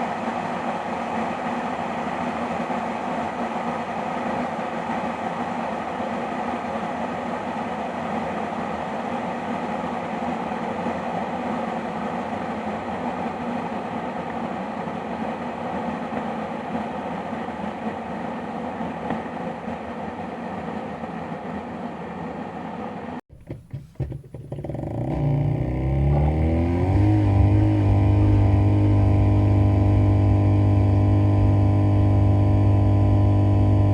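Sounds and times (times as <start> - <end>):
appliance whirring hum: 21.0 - 33.9
appliance motor whine: 23.3 - 33.9.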